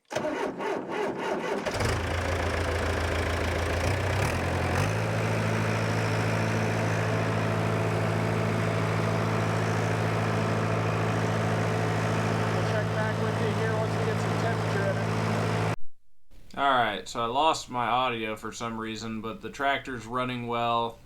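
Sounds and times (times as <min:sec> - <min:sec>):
diesel tractor engine starting and idling: 0:00.0 - 0:15.8.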